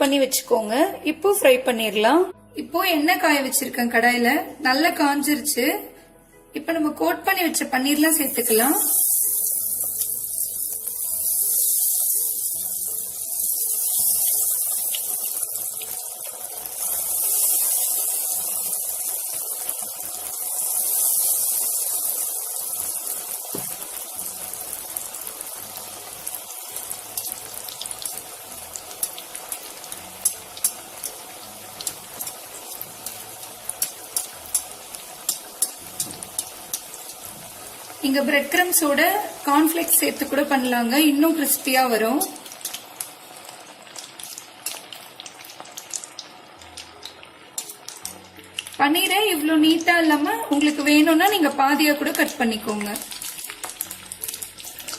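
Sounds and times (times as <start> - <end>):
food sizzling in hot oil: 7.2 - 54.9
oil crackles and pops: 8.8 - 37.6, 42.2 - 48.8, 52.0 - 54.9.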